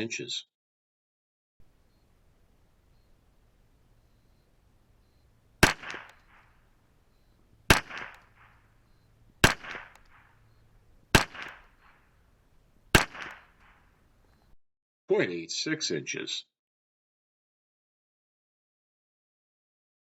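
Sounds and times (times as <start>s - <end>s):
faint second report: 1.6s - 11.2s
rifle shots: 1.6s - 14.3s.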